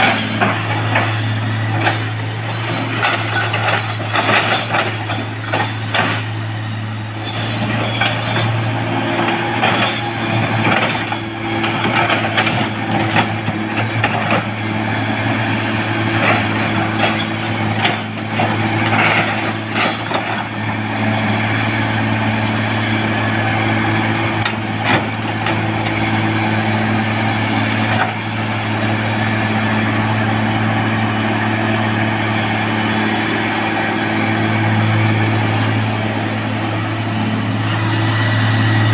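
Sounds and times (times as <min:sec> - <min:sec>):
metallic clanks and knocks: 0:00.0 - 0:06.4, 0:16.1 - 0:20.5
diesel machinery droning: 0:00.0 - 0:38.9.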